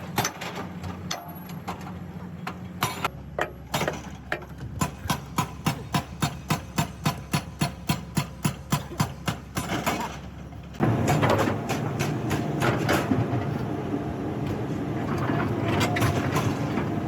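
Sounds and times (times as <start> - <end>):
heavy machinery rumbling: 10.8 - 17.0.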